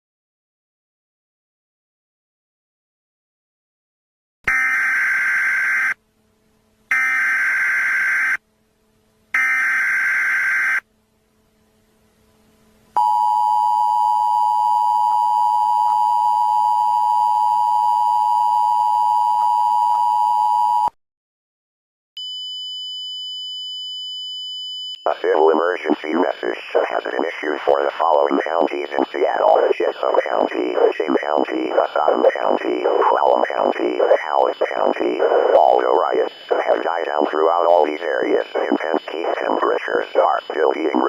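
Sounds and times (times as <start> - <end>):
high steady beep: 13.0 - 19.7, 26.2 - 39.6.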